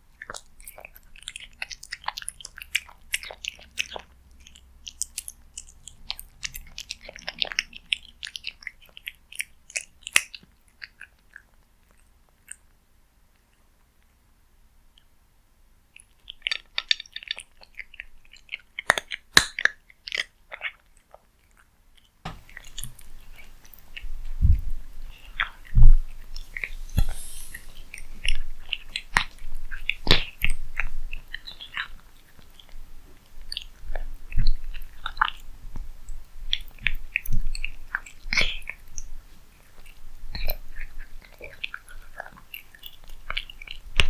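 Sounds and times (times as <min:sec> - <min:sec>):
cat chewing food: 0:00.1 - 0:12.7, 0:22.0 - 0:44.0
knocks: 0:22.3 - 0:23.0.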